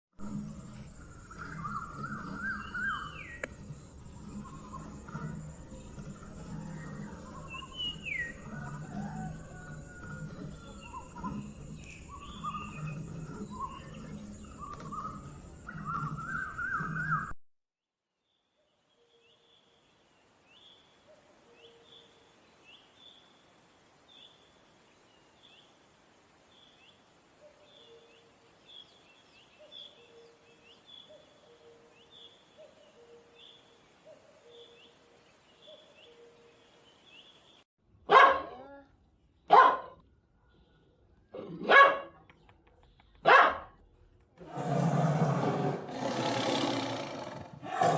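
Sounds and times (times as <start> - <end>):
dog barking: 38.1 - 38.6, 39.5 - 40.0, 41.6 - 42.2, 43.2 - 43.8.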